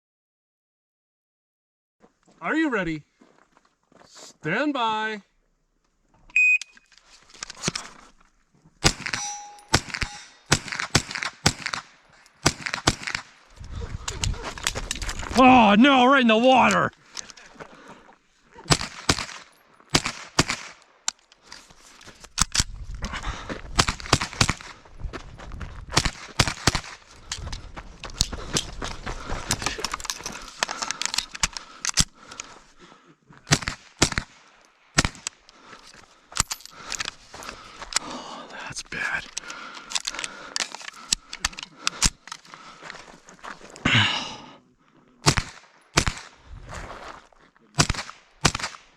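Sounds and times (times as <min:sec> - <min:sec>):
shot timer beep: 0:06.3 - 0:06.8
rifle gunshots: 0:08.8 - 0:13.4, 0:18.7 - 0:20.8, 0:23.8 - 0:24.8, 0:26.0 - 0:27.0, 0:33.5 - 0:34.4, 0:35.0 - 0:35.3, 0:45.2 - 0:46.4, 0:47.8 - 0:48.9
steel target ringing: 0:09.1 - 0:10.5.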